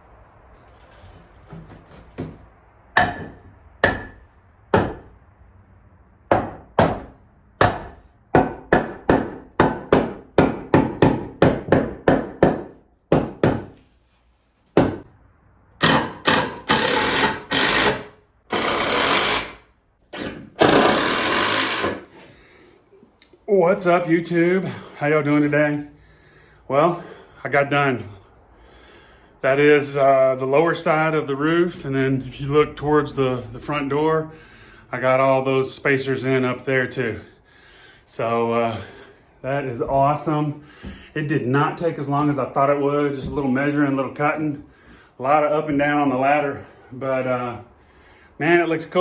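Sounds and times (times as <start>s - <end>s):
hammer striking wood: 3.0s - 5.1s, 6.3s - 13.8s, 14.8s - 15.1s, 15.8s - 19.6s
power tool bursts: 15.8s - 22.2s.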